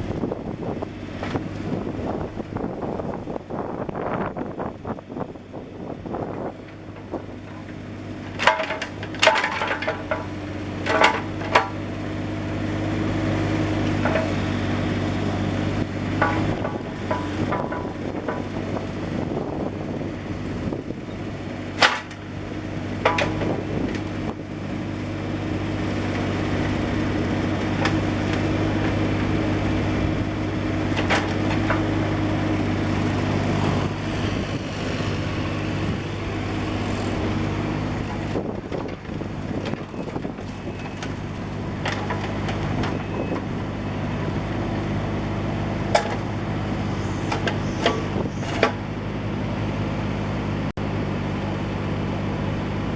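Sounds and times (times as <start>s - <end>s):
diesel excavator engine running: 0.0s - 52.9s
sharp knocks: 16.2s - 18.6s.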